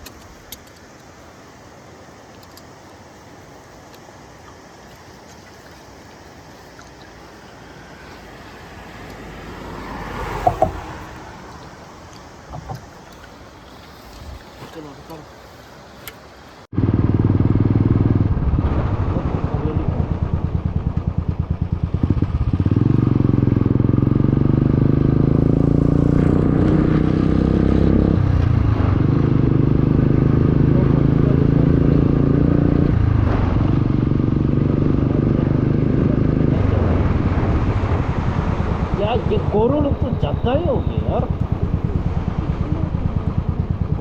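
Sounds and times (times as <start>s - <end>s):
motorcycle engine revving: 7.7s - 11.9s, 16.7s - 44.0s.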